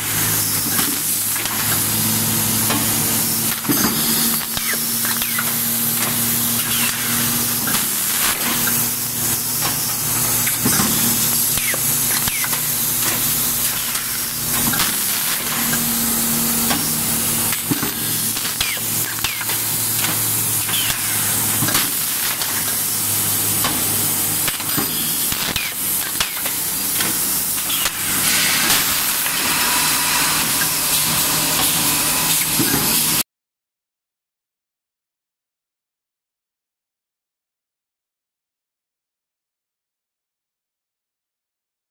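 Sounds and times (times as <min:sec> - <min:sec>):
printing machine hum and hiss: 0:00.0 - 0:33.2.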